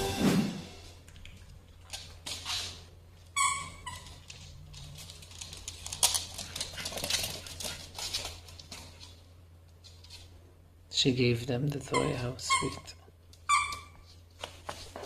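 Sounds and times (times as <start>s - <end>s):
clicks and rustling of pet moving: 4.2s - 10.3s
small pet squealing: 11.9s - 12.9s.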